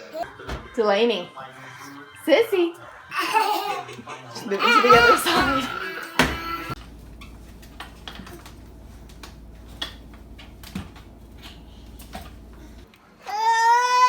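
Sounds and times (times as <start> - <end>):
low steady hum: 6.7 - 12.9.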